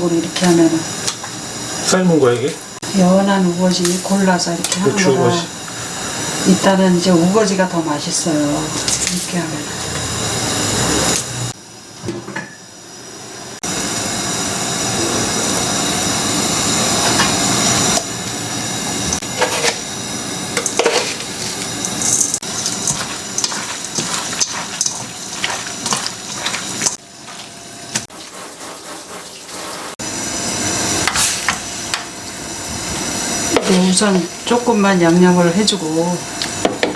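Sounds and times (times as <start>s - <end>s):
water running from tap: 20.6s - 30.0s.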